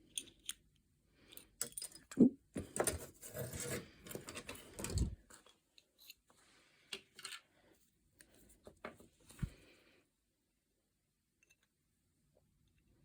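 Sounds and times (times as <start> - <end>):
plastic parts scraping and rustling: 2.6 - 6.3.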